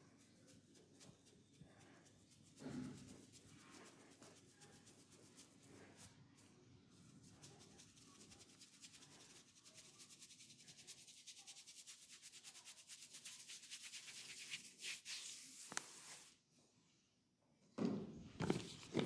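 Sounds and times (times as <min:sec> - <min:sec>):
hands rubbing over skin: 0:08.2 - 0:16.4.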